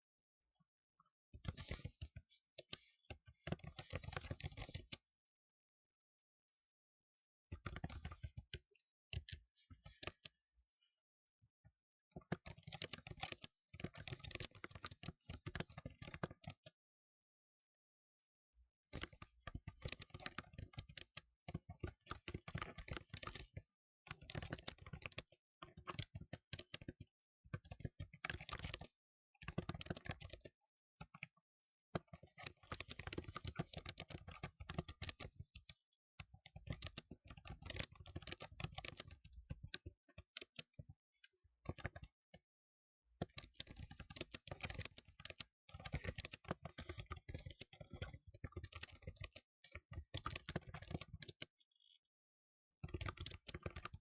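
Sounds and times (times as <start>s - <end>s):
computer keyboard typing: 2.7s - 5.0s, 7.6s - 8.4s, 12.3s - 16.7s, 18.9s - 27.0s, 27.6s - 31.1s, 32.0s - 40.8s, 41.7s - 42.1s, 43.2s - 52.0s, 52.8s - 54.0s.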